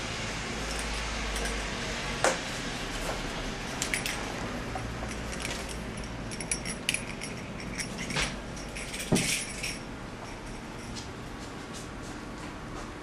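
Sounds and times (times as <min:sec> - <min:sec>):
metallic jingles: 0:03.8 - 0:04.4, 0:05.0 - 0:11.0.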